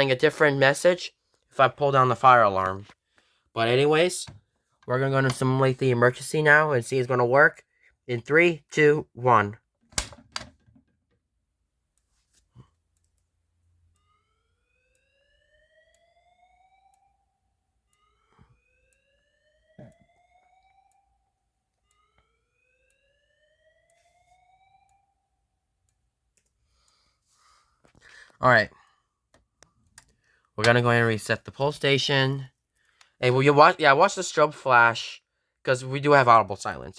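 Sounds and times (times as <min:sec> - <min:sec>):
faint whoop alarm tone: 0:14.0 - 0:25.2.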